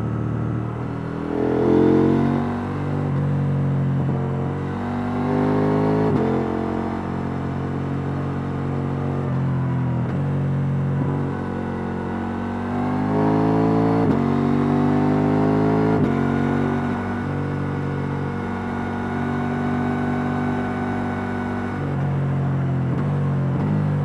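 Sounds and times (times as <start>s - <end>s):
motorcycle engine revving: 0.0s - 9.2s.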